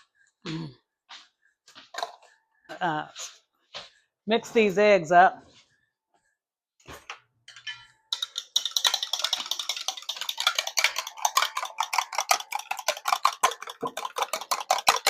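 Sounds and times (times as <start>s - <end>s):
whisk clicking against bowl: 8.1s - 15.0s.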